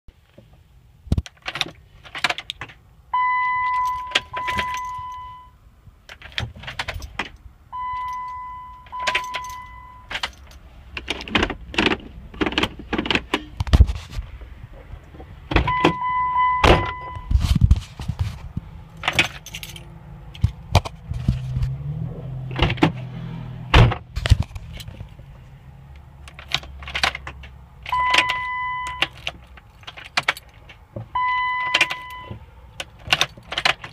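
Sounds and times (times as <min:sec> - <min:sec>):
car warning chime: 0:03.1 - 0:05.6, 0:07.7 - 0:10.1, 0:15.7 - 0:17.3, 0:27.9 - 0:29.2, 0:31.1 - 0:32.4
keys jangling: 0:08.0 - 0:10.6, 0:19.0 - 0:20.5, 0:26.3 - 0:30.8.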